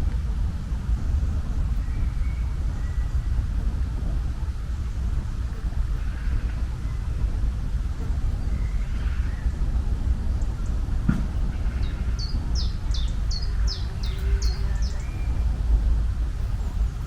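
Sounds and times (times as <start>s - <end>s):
steady low rumble: 0.0s - 17.0s
bird chirping: 11.7s - 15.5s.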